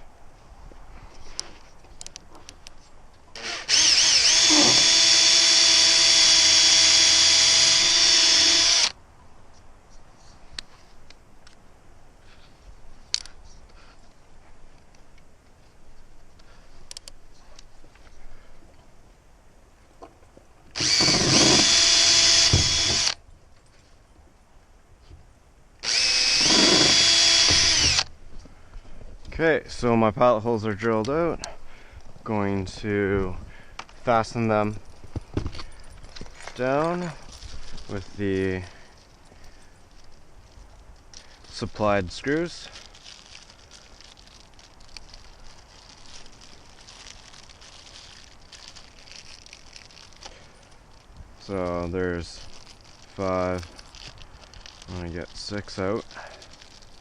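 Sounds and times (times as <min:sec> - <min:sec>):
drill whining: 0:03.3 - 0:09.0, 0:20.8 - 0:23.2, 0:25.8 - 0:28.1.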